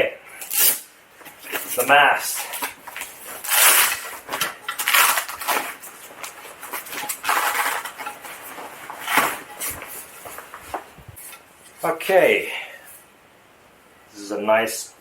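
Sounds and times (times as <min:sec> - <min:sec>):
rustling of padded bag: 0:01.3 - 0:11.4.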